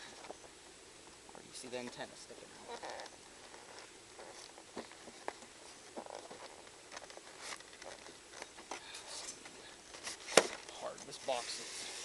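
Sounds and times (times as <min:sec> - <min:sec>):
cardboard box rustling and scraping: 0:10.0 - 0:12.0.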